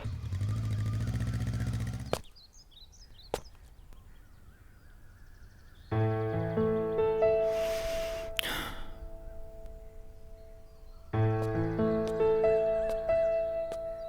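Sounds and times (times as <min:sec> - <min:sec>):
motorcycle engine running: 0:00.0 - 0:02.3
faint bird chirps: 0:00.0 - 0:14.0
background music: 0:05.9 - 0:14.0.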